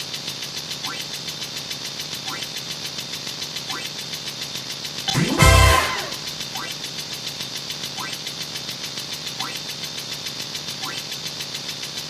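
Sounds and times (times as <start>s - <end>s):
engine-like mechanical running: 0.0s - 5.2s.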